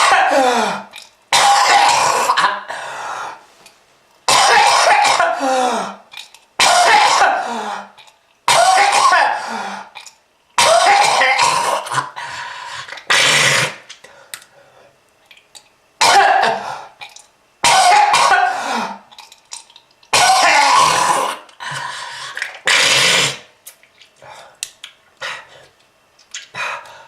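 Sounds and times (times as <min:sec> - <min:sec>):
person coughing harshly: 0:00.0 - 0:02.7, 0:04.3 - 0:06.0, 0:06.6 - 0:07.9, 0:08.5 - 0:09.6, 0:10.6 - 0:12.2, 0:16.0 - 0:16.8, 0:17.6 - 0:19.0, 0:20.1 - 0:21.5.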